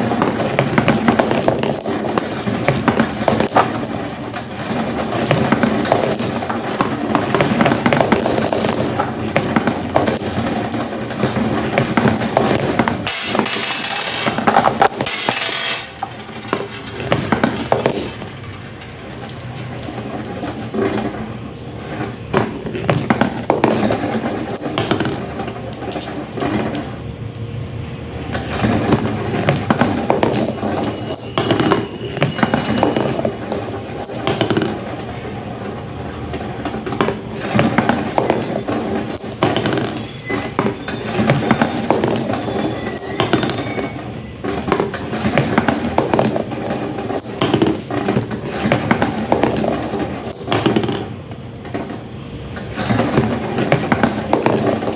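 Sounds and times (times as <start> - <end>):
marbles clicking and clacking: 0.0 - 21.1
marbles rolling on track: 0.0 - 26.9, 28.3 - 54.9.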